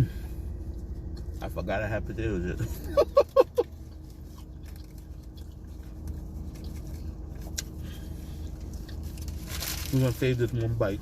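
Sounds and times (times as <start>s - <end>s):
chewing and mouth clicks: 3.6s - 7.8s, 8.4s - 9.4s.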